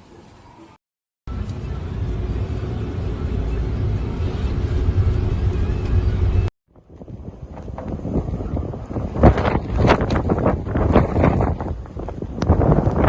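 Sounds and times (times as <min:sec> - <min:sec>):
wind buffeting microphone: 0:06.7 - 0:13.0.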